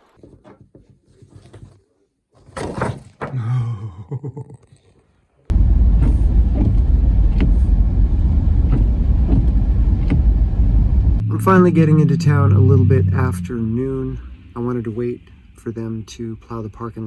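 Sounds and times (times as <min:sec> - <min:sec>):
car road noise rumble: 0:05.5 - 0:17.0.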